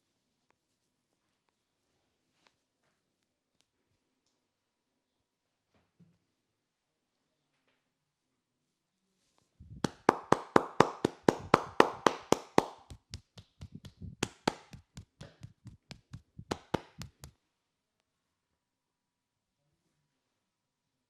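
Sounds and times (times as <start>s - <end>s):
hands slapping in massage strokes: 9.7s - 17.4s.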